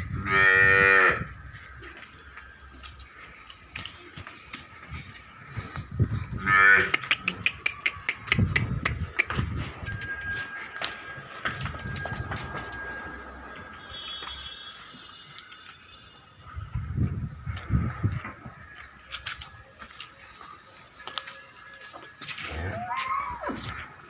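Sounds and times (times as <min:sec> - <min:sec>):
sharp clicks and clinks: 0:06.9 - 0:13.5
thin metallic ringing tones: 0:07.5 - 0:22.9.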